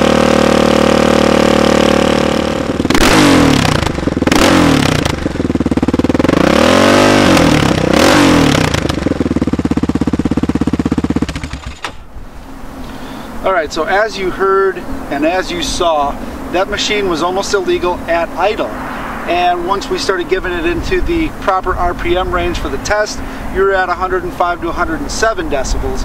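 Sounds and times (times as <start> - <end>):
atv engine revving: 0.0 - 12.0.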